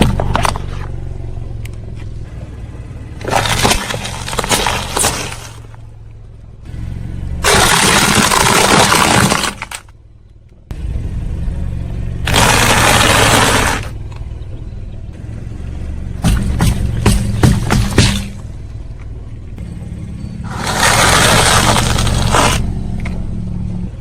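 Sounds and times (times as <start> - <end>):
car running at low speed: 0.0 - 24.0
tyre crushing brittle objects: 3.2 - 5.8, 7.4 - 9.9, 12.3 - 14.0, 16.2 - 18.4, 20.5 - 22.7.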